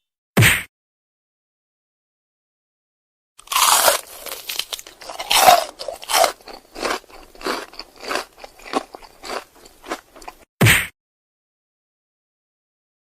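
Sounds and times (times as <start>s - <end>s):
crunchy food being chewed: 3.4s - 10.5s.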